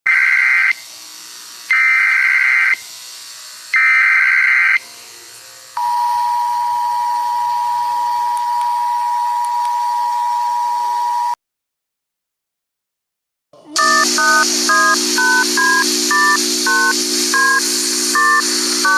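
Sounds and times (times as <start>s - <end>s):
steady attention tone: 13.6s - 18.9s
warbling data tones: 13.8s - 18.9s.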